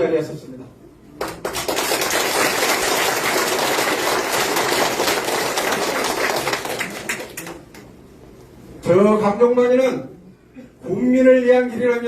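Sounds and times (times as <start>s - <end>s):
audience applauding: 1.2s - 7.8s.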